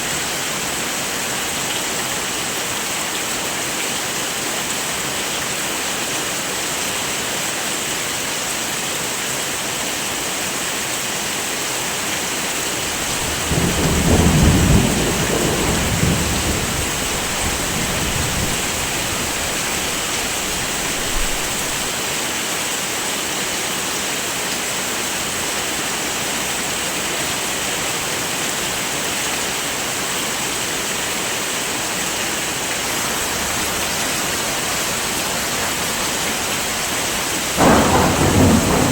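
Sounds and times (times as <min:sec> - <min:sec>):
heavy rain: 0:00.0 - 0:38.9
thunder rumbling: 0:12.8 - 0:21.9, 0:32.8 - 0:38.9.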